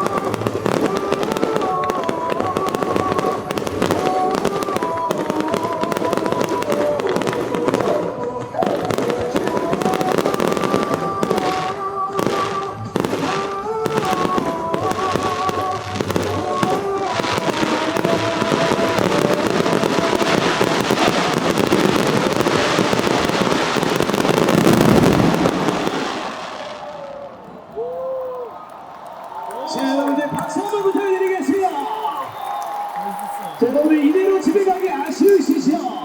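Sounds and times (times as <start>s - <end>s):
music with a melody: 0.0s - 24.5s
fireworks bangs: 0.0s - 36.0s.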